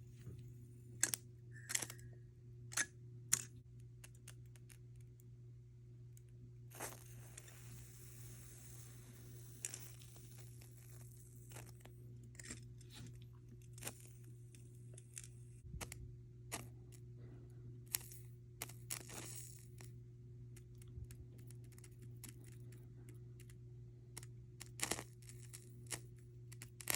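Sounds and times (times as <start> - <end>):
low hum: 0.0 - 26.5
small pops and crackles: 23.4 - 26.9.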